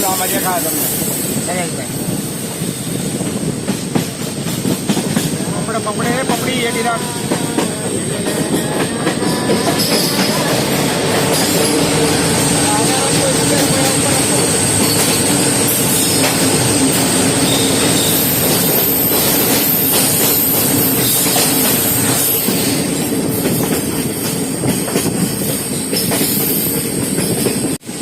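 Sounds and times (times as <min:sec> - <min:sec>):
train rumble on rails: 0:00.0 - 0:28.0
train wheel squeal: 0:06.0 - 0:23.8.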